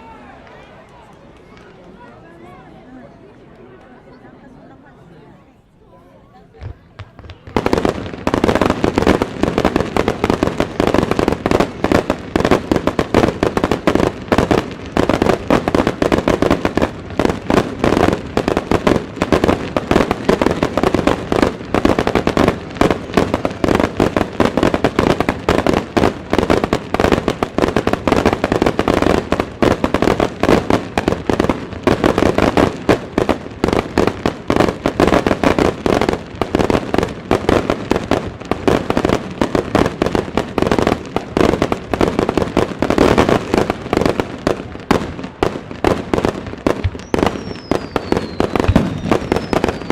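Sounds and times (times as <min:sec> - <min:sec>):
fireworks barrage: 0:06.5 - 0:49.9.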